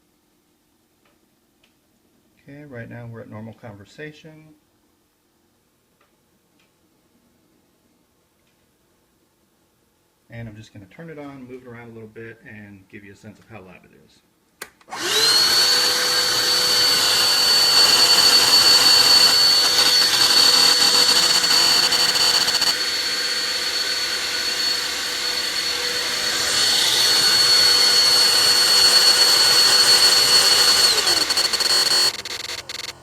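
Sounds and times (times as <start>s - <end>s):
handheld vacuum whine: 14.9s - 33.0s.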